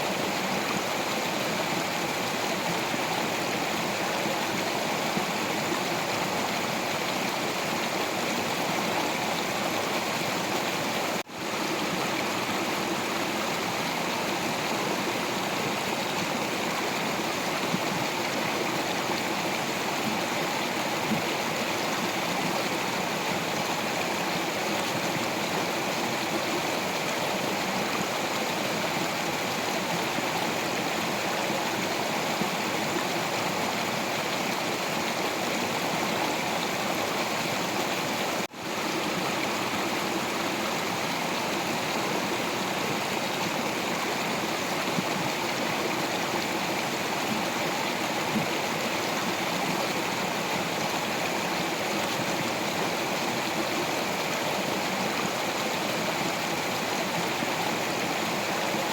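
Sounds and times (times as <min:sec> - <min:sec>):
stream water over rocks: 0:00.0 - 0:58.9.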